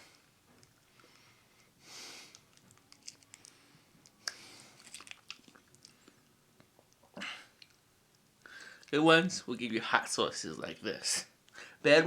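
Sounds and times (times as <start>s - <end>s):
man chewing chicken wings: 2.3s - 6.3s
mouth clicks and smacks: 2.3s - 7.8s.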